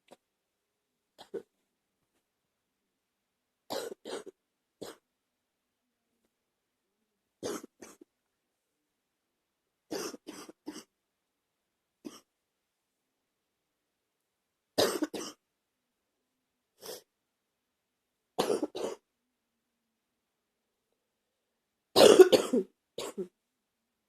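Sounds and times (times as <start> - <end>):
person coughing: 3.7 - 5.0, 7.4 - 8.0, 9.9 - 10.9, 12.1 - 12.3, 14.8 - 15.4, 18.4 - 19.0, 22.0 - 23.3.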